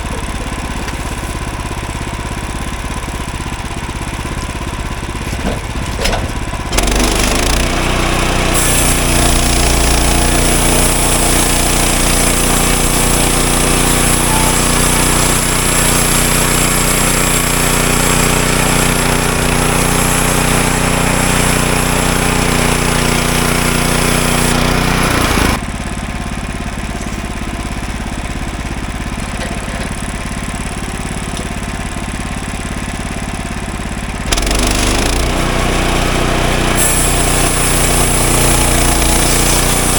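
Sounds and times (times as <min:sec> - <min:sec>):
sawmill gasoline engine running: 0:00.0 - 0:39.9.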